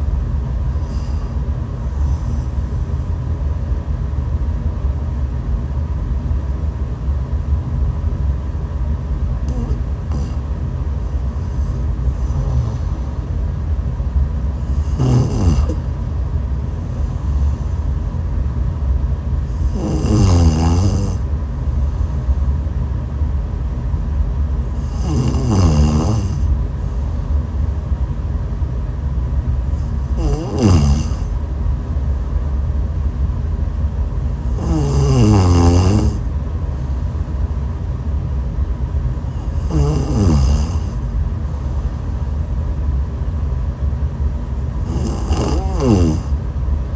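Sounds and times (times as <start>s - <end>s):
steady low rumble: 0.0s - 46.9s
person snoring: 0.8s - 2.7s, 9.5s - 10.4s, 11.4s - 13.1s, 14.6s - 15.9s, 19.5s - 21.2s, 24.8s - 26.5s, 29.8s - 31.3s, 34.4s - 36.3s, 39.3s - 41.1s, 44.8s - 46.4s.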